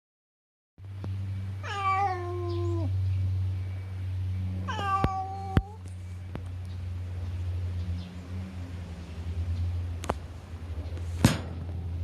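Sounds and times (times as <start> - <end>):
steady low hum: 0.8 - 12.0
cat meowing: 1.6 - 2.9, 4.6 - 5.8.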